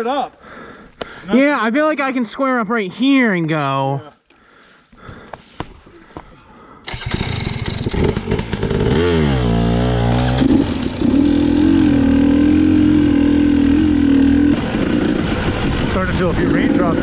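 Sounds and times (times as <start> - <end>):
dirt bike engine revving: 6.9 - 17.0.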